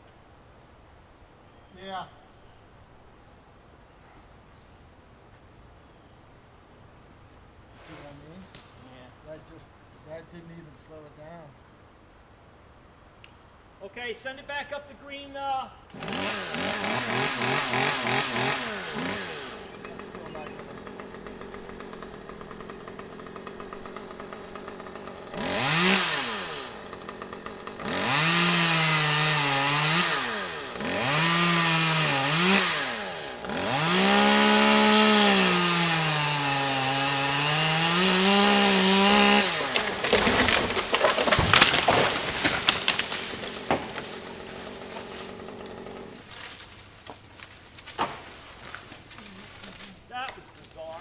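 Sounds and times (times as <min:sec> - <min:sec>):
chainsaw idling and cutting wood: 0:15.9 - 0:51.0
wood cracking and snapping: 0:36.6 - 0:51.0.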